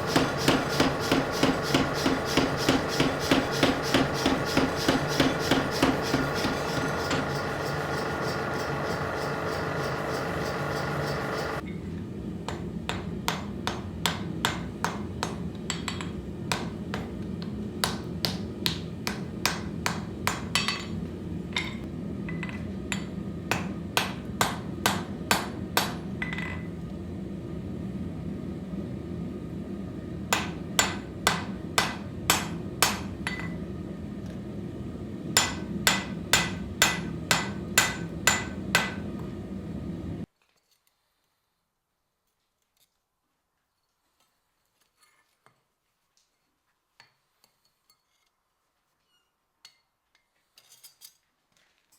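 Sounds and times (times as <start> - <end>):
hammer striking steel on anvil: 0.0 - 11.6, 17.8 - 21.0, 21.6 - 26.7, 30.3 - 33.6, 35.3 - 39.3
steady low hum: 0.0 - 40.3.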